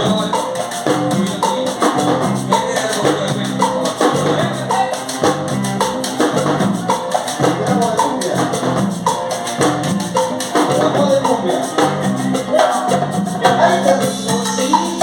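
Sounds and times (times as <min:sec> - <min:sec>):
loud latin dance music: 0:00.0 - 0:15.0.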